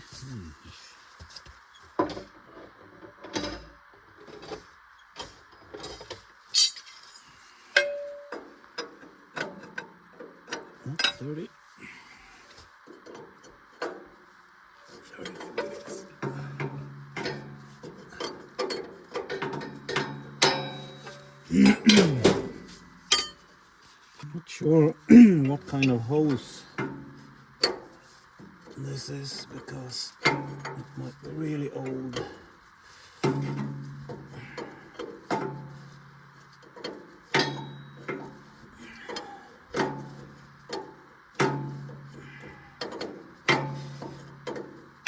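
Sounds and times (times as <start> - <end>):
short vocal sound: 0.2 - 1.0, 21.5 - 22.7, 24.3 - 26.1
metal wrenches clinking: 5.7 - 7.0, 15.2 - 23.4, 36.8 - 38.4.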